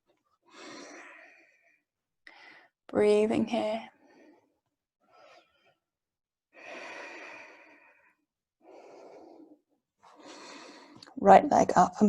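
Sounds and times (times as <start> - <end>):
person breathing: 0.4 - 2.8, 6.6 - 11.0.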